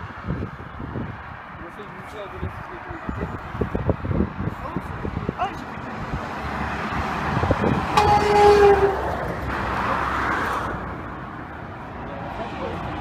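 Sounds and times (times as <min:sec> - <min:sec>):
truck rushing past: 0:05.1 - 0:11.6
truck horn blast: 0:07.9 - 0:09.2.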